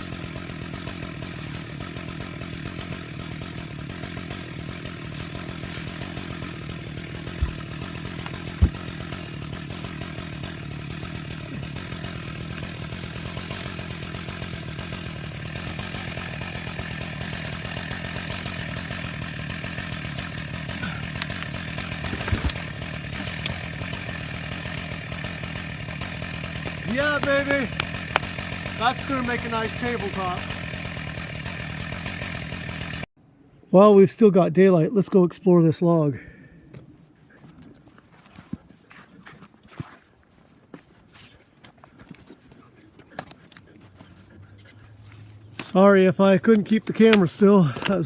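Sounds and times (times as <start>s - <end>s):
chainsaw cutting log: 0.0s - 33.1s, 43.1s - 48.0s
sharp knocks: 7.3s - 9.1s.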